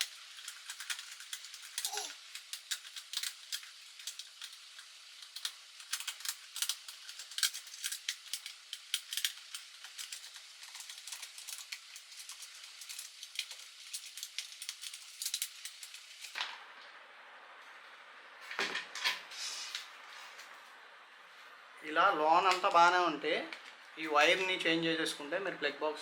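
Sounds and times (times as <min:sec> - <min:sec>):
plastic box and tools clicking: 0:00.0 - 0:16.4.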